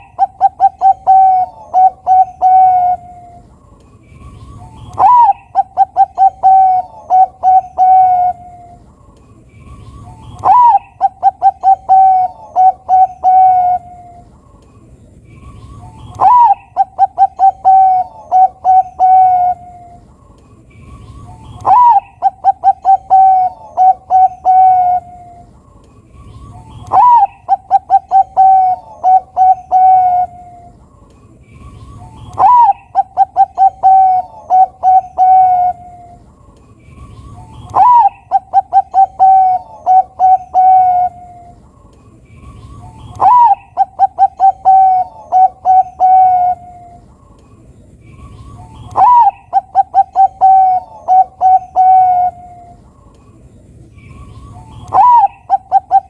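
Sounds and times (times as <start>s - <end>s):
dove cooing song: 0.0s - 14.6s, 15.3s - 20.2s, 20.8s - 56.0s.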